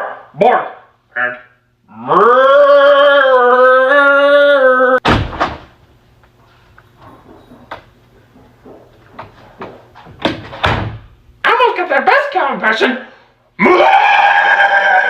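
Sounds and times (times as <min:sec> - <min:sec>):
person mooing: 0:01.9 - 0:05.0
heavy thump: 0:05.0 - 0:05.8.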